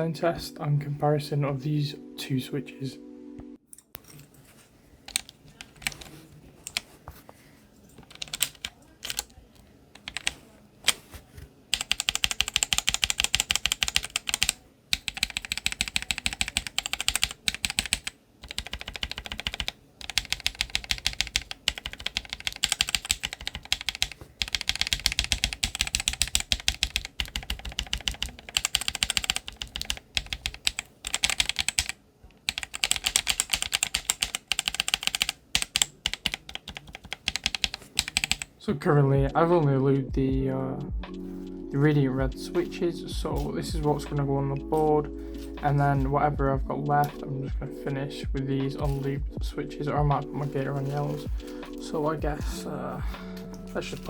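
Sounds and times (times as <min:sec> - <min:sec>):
mechanical keyboard clacks: 0:05.1 - 0:06.8, 0:08.0 - 0:09.3, 0:10.0 - 0:11.0, 0:11.7 - 0:38.5.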